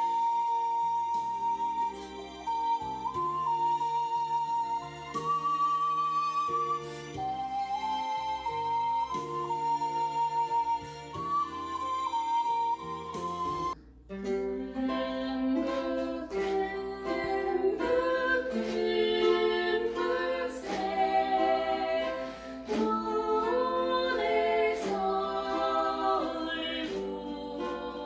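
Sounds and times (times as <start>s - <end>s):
ukulele strumming: 14.1s - 28.0s
group of voices singing: 14.6s - 28.0s.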